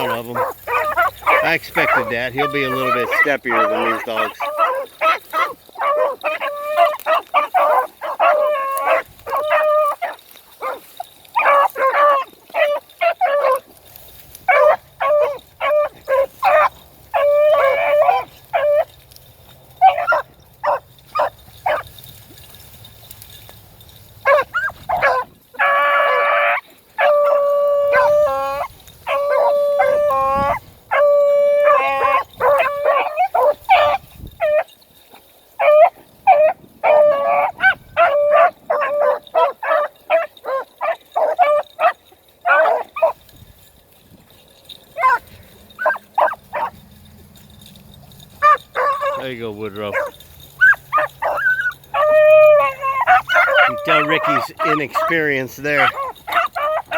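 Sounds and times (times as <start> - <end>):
dogs howling: 0.0 - 13.8, 14.4 - 22.4, 24.2 - 43.2, 44.3 - 56.9
dogs barking: 0.0 - 22.6, 24.0 - 43.2, 44.6 - 56.9.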